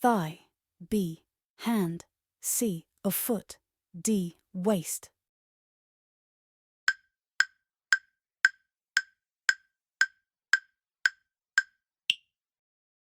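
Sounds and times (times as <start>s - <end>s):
countdown timer ticks: 6.9s - 12.3s.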